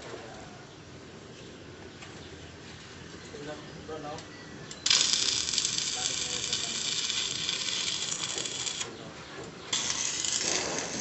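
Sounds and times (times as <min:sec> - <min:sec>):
welding arc crackling hiss: 0:04.8 - 0:08.9, 0:09.7 - 0:11.0.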